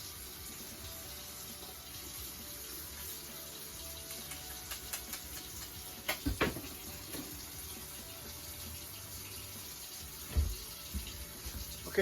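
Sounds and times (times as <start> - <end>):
water running from a tap: 0.0 - 12.0
items clicking in a sink: 4.0 - 7.4.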